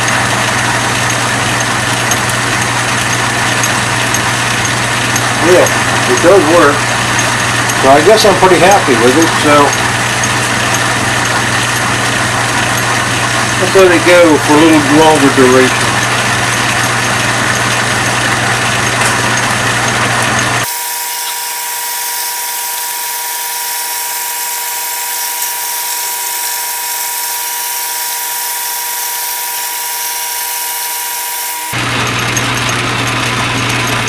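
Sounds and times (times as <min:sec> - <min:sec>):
lathe motor humming: 0:00.0 - 0:34.0
thin steady whine: 0:20.6 - 0:31.8.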